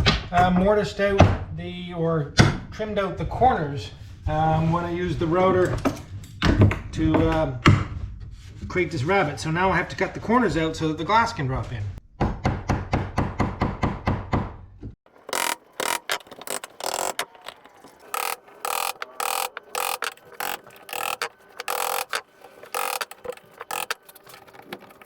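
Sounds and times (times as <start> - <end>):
rasping strokes on wood: 15.2 - 25.0.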